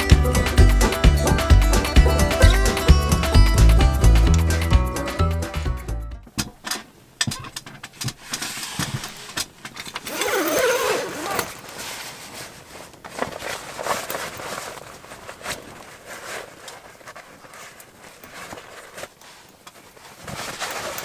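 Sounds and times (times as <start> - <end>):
knocks and clicks of tent ladder: 6.3 - 12.0
wavering squeak: 10.1 - 11.5.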